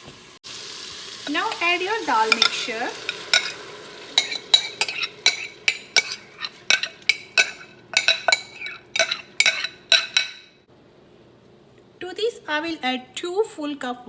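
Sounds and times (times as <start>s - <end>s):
metal spoon clinking in pot: 2.3s - 3.6s, 4.2s - 10.6s.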